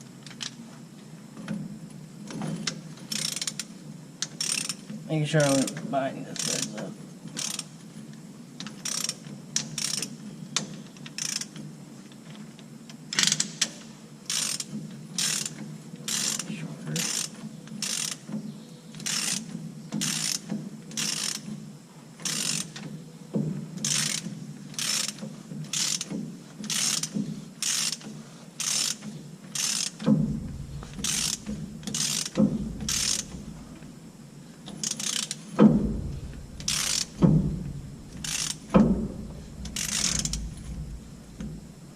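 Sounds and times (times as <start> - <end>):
ratchet wrench clicking: 3.1 - 4.8, 6.4 - 7.7, 8.6 - 10.1, 11.1 - 11.6, 13.1 - 13.7, 14.3 - 18.2, 19.0 - 21.5, 22.2 - 22.8, 23.8 - 33.9, 34.7 - 41.6
heavy metal knocks: 30.0 - 34.2, 35.6 - 41.9.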